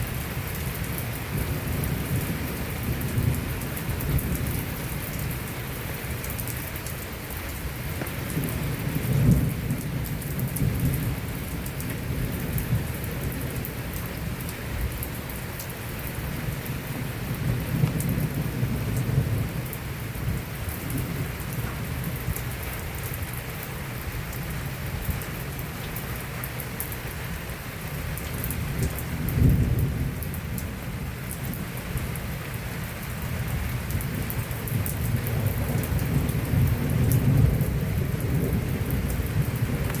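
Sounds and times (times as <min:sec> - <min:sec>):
heavy rain pouring: 0:00.0 - 0:40.0
deep thunder rumbles: 0:08.0 - 0:15.0, 0:16.2 - 0:22.6, 0:28.2 - 0:40.0.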